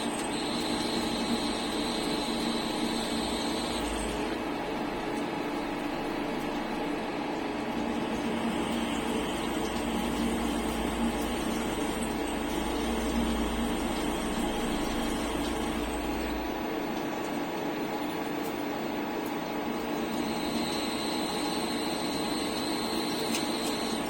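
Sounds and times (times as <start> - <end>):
machine hum with held tones: 0.0 - 6.9, 7.6 - 24.0.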